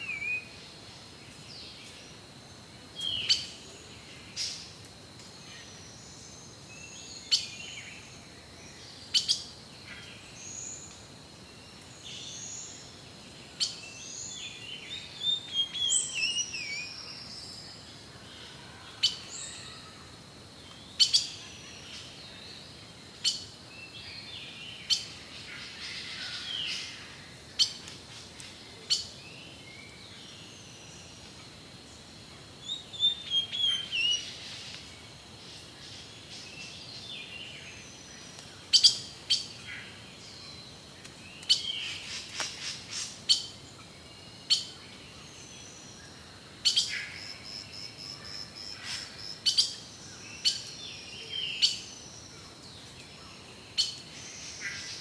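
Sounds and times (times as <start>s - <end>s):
birds chipping and whistling: 32.6s - 35.0s.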